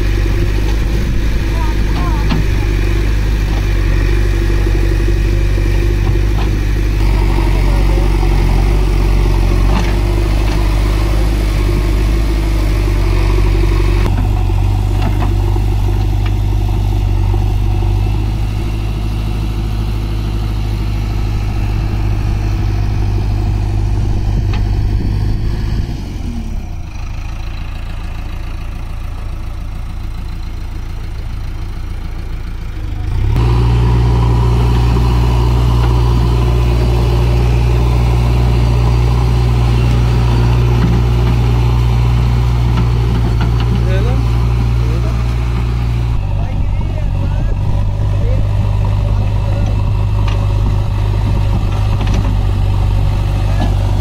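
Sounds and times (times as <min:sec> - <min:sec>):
heavy diesel engine under load: 0:00.0 - 0:54.0.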